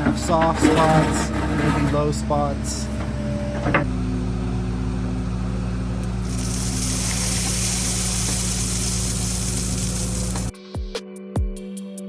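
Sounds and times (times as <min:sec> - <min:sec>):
excavator diesel engine running: 0:00.0 - 0:10.5
high hiss: 0:06.2 - 0:10.5.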